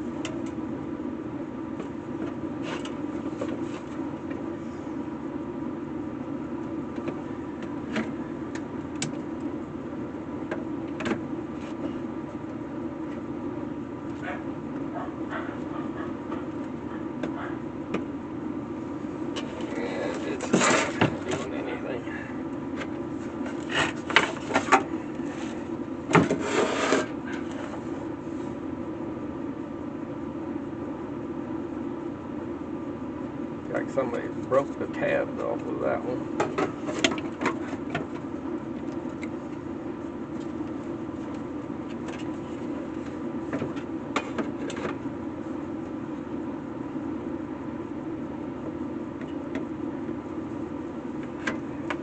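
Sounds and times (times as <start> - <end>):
steady low hum: 0.0 - 52.0
scraping rub: 19.6 - 21.0, 26.3 - 27.2.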